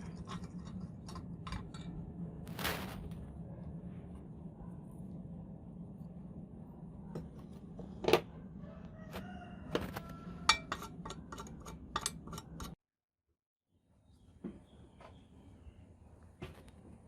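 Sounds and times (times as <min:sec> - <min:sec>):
steady low hum: 0:00.0 - 0:09.0.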